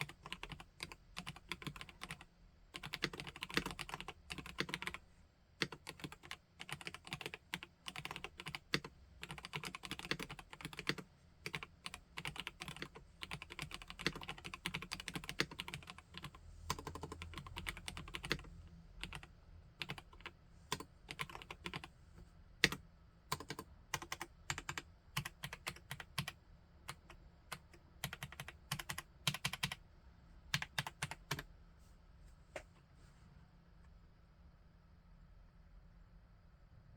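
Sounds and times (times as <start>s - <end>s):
mechanical keyboard typing: 0.0s - 2.2s, 2.8s - 5.0s, 5.6s - 21.9s, 22.6s - 29.8s, 30.5s - 31.5s.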